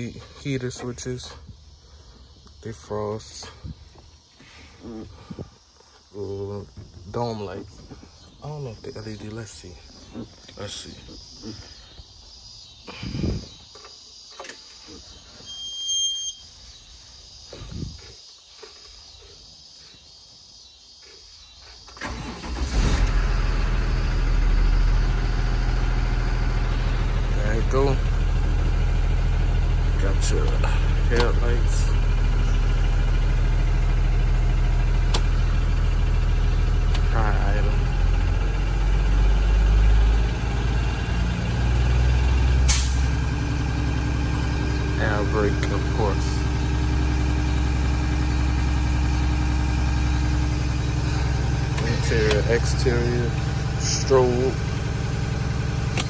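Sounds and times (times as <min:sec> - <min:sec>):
diesel bus engine starting and idling: 0:06.2 - 0:11.8, 0:21.8 - 0:56.0
air brake hissing: 0:42.7 - 0:43.2.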